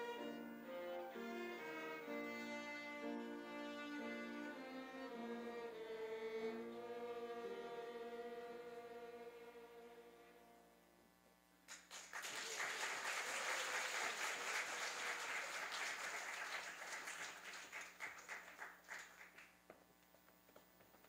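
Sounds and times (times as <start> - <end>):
applause: 11.7 - 19.6.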